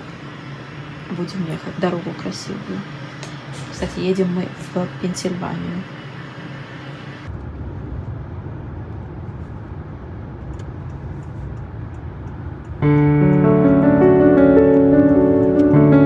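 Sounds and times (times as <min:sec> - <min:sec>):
low background rumble: 0:07.2 - 0:16.0
piano music: 0:12.8 - 0:16.0.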